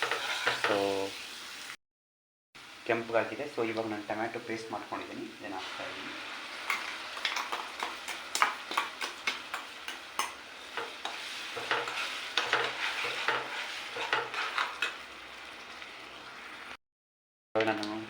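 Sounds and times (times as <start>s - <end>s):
utensil scraping a pan: 0.0s - 0.9s, 5.6s - 15.0s
paste sizzling in oil: 0.0s - 1.8s, 2.6s - 16.8s.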